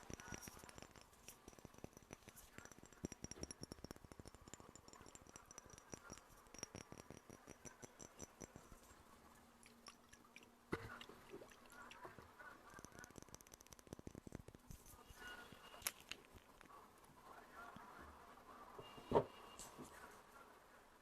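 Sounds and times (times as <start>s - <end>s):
wet mouth clicks: 0.0s - 8.8s, 9.6s - 15.0s.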